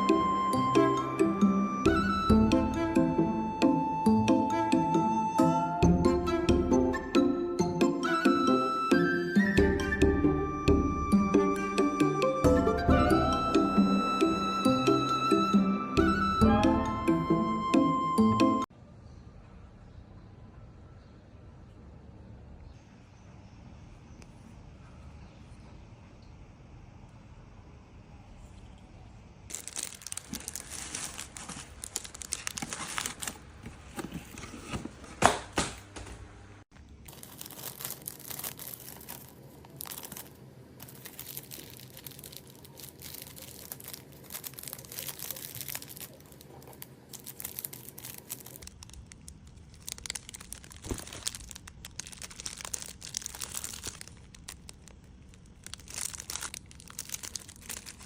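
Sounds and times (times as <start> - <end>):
crinkling and rustling materials: 29.5 - 58.0.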